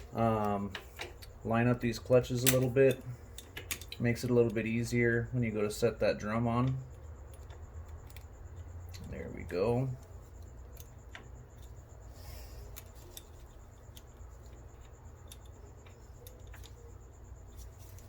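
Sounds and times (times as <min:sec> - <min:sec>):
metallic clicks and taps: 0:00.0 - 0:04.9, 0:06.6 - 0:11.9, 0:12.7 - 0:18.0.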